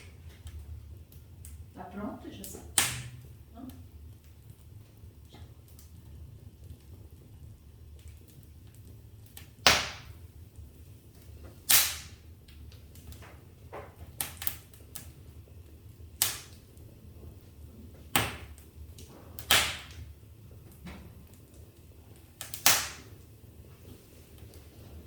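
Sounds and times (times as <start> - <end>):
sharp pops and snaps: 0.0 - 1.7, 2.4 - 7.2, 7.8 - 16.9, 18.0 - 23.4
low steady rumble: 0.0 - 19.4
wood fire crackling: 0.0 - 25.0.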